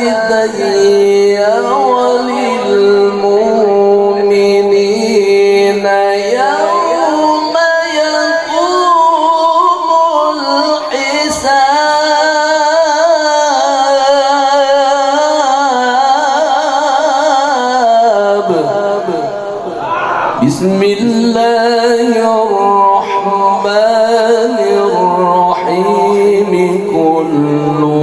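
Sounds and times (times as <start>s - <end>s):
man chanting a long note: 0.0s - 19.6s.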